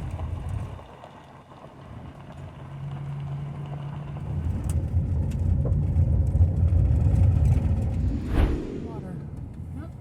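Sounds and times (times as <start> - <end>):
vehicle engine rumble: 0.0 - 10.0
steady low hum: 7.4 - 10.0.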